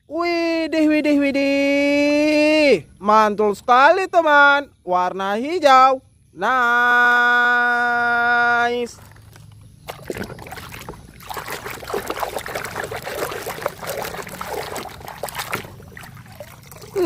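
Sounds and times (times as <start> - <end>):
water splashing and trickling: 8.5 - 17.0.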